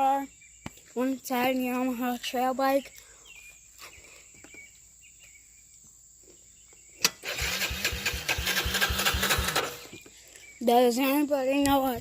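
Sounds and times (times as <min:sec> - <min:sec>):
engine cranking on starter: 0:07.0 - 0:10.0.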